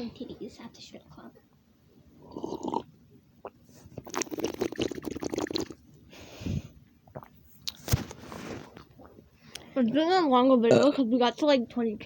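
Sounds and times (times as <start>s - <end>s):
wet mouth smacking and slurping: 4.0s - 5.8s.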